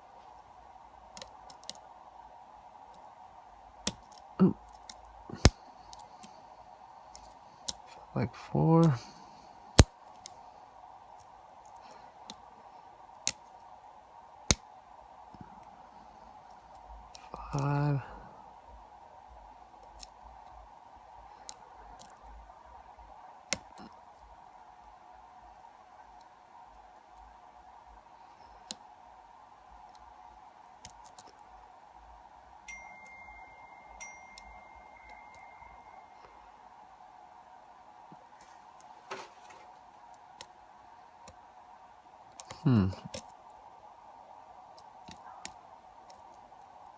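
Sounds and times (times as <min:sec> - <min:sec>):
faint steady hum: 0:00.0 - 0:46.9
high metallic ring: 0:32.7 - 0:36.7.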